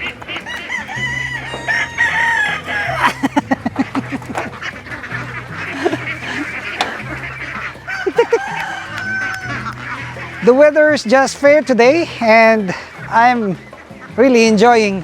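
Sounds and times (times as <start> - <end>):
rapid duck quacks: 0.0 - 10.7
ducks honking: 0.0 - 15.0.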